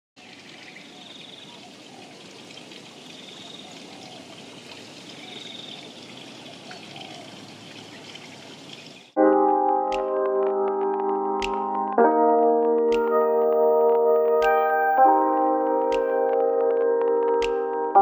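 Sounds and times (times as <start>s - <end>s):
running water: 0.2s - 9.2s.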